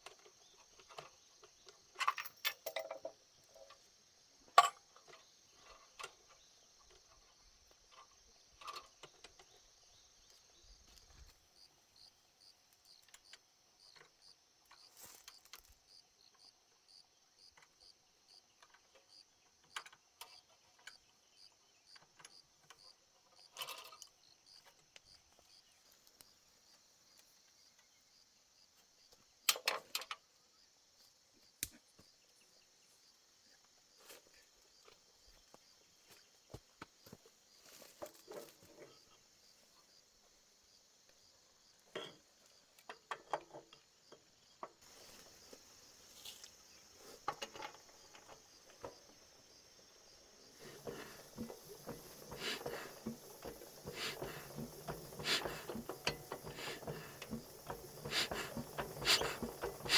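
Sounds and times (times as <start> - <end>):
insects chirping: 0.0 - 59.9
handling clicks and knocks: 47.1 - 59.9.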